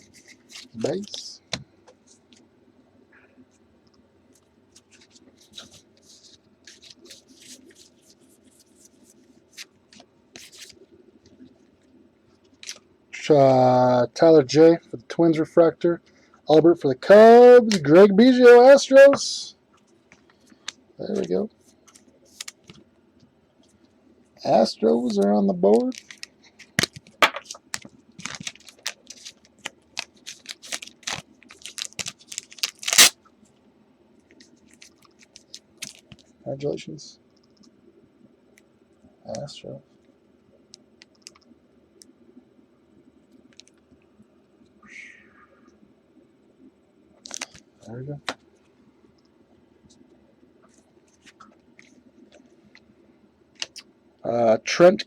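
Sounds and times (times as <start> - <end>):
cards rustling against cards: 0.0 - 1.3, 4.4 - 10.8, 19.8 - 22.8, 25.0 - 33.2, 34.3 - 36.3
trading cards rustling and snapping: 21.9 - 22.8, 25.7 - 33.2, 34.4 - 36.3, 47.2 - 47.7.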